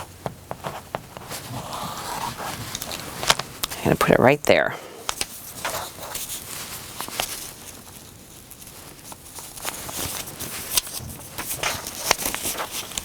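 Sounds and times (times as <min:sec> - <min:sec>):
paper rustling: 0:05.1 - 0:13.0.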